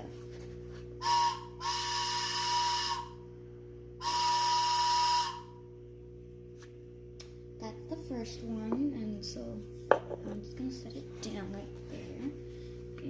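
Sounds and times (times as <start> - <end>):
toy train whistle toots: 1.0 - 3.2, 4.0 - 5.6.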